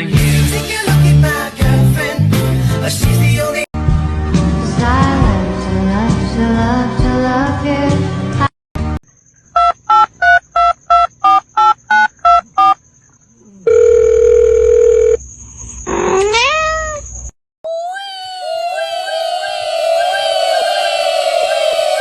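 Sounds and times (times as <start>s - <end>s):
telephone keypad beeps: 9.6s - 12.8s
steady telephone tone: 13.7s - 15.2s
upward sweeping call: 18.4s - 22.0s.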